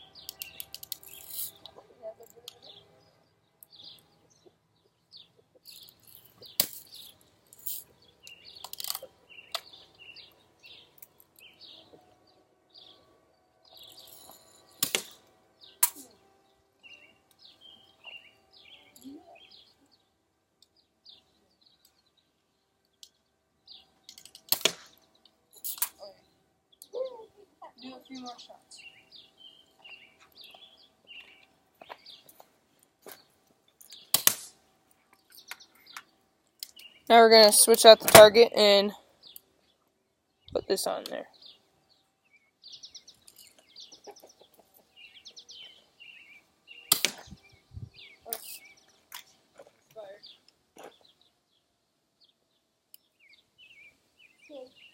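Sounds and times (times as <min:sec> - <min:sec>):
birds chirping: 0:00.0 - 0:54.9
bb gun shot: 0:46.9 - 0:47.3.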